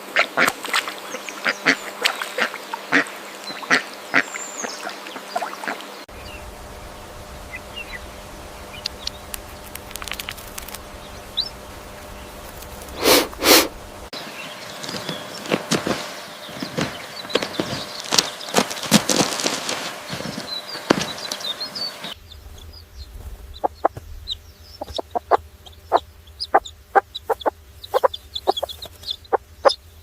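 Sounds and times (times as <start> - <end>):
ducks quacking: 0.0 - 6.5, 7.3 - 14.0, 23.6 - 29.8
faint chirps: 6.1 - 15.4, 20.1 - 30.0.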